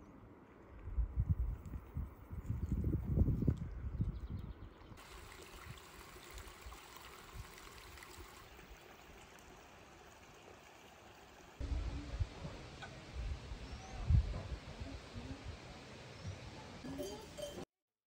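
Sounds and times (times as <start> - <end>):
stream water flowing: 5.0 - 13.1.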